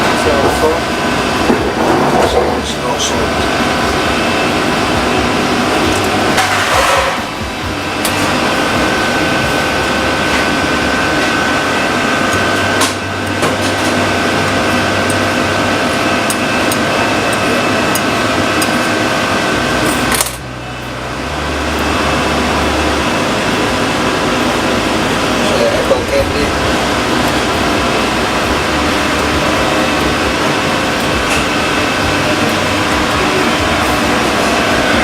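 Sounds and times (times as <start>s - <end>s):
mechanical hum with high whine: 0.0s - 35.0s.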